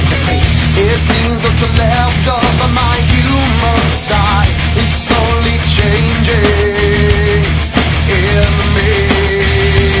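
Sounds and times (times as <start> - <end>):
heavy rock music: 0.0 - 10.0.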